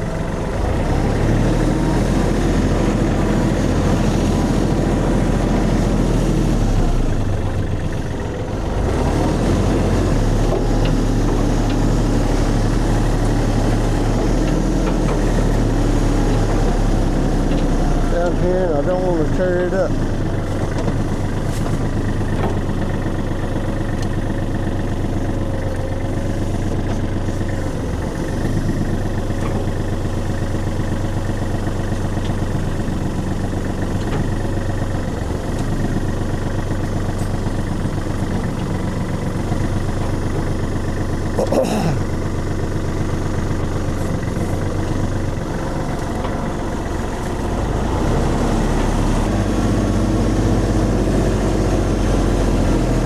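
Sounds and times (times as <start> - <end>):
tractor diesel engine running: 0.0 - 53.0.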